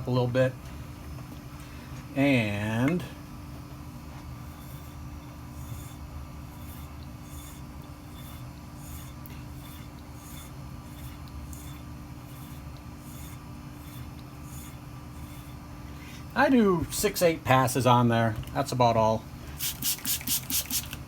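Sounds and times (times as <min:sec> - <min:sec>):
steady low hum: 0:00.0 - 0:21.0
razor blade swishing across plate: 0:04.2 - 0:16.2.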